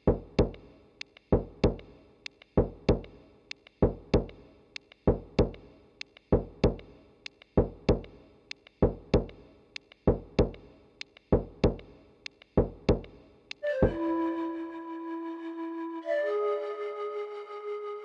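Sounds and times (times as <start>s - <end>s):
deep thumping beat: 0.1s - 0.6s, 1.4s - 1.9s, 2.6s - 3.1s, 3.8s - 4.4s, 5.1s - 5.6s, 6.3s - 6.9s, 7.6s - 8.1s, 8.8s - 9.4s, 10.1s - 10.6s, 11.3s - 11.9s, 12.6s - 13.2s
flute melody: 13.6s - 18.0s.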